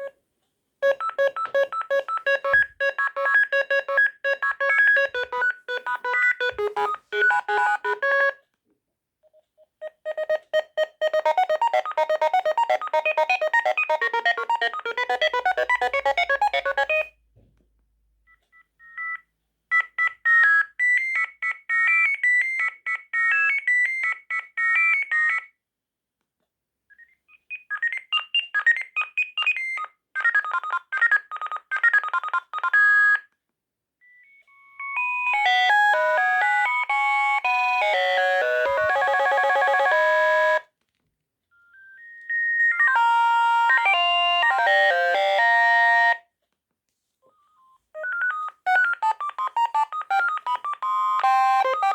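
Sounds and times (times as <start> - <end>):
mobile phone ringtone melodies: 0.8 - 8.4, 9.8 - 17.2, 34.2 - 40.6, 41.7 - 46.2, 47.3 - 51.9.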